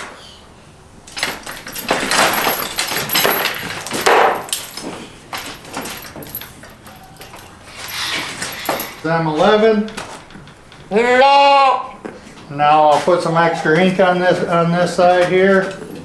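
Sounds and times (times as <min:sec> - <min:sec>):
knocks and scuffling: 0:01.0 - 0:11.0
metal clattering: 0:01.1 - 0:11.0.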